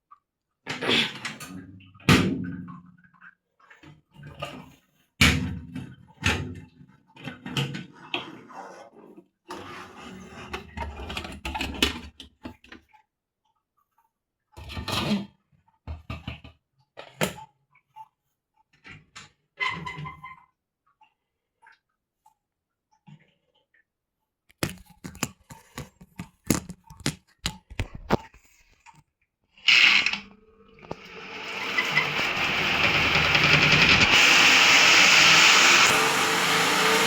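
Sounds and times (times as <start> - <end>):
washing machine parts knocking and rattling: 24.5 - 28.3.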